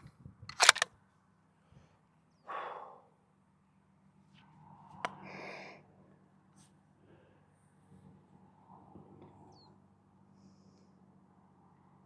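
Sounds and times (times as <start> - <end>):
sharp click: 0.5 - 0.9.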